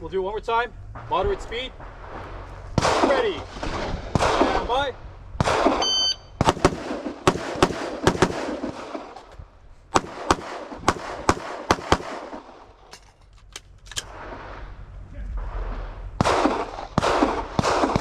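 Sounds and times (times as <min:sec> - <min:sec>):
gunshots: 0:01.0 - 0:04.8, 0:05.4 - 0:09.2, 0:09.9 - 0:12.8, 0:15.4 - 0:18.0
shot timer beep: 0:05.8 - 0:06.4.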